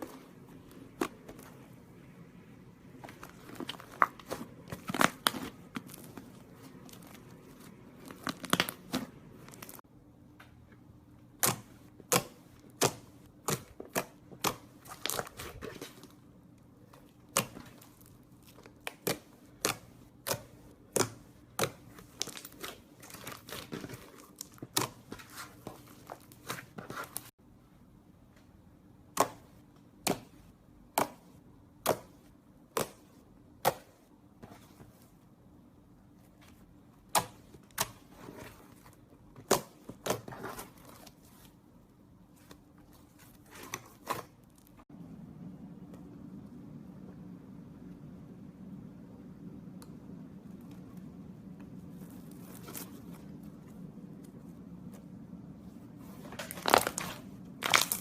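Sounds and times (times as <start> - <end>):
slime popping and crackling: 56.5 - 58.0.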